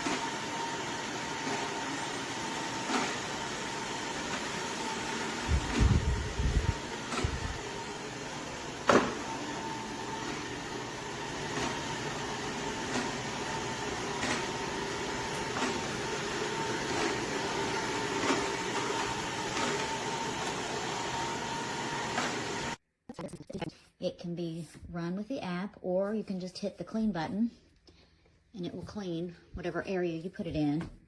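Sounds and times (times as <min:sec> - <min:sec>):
robot vacuum motor whine: 0:00.0 - 0:22.8.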